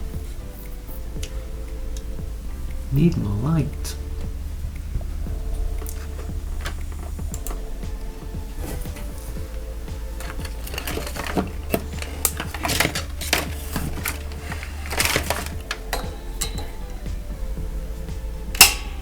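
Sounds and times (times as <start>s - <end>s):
low hum: 0.0s - 19.0s
small tools clattering on workbench: 10.2s - 16.8s.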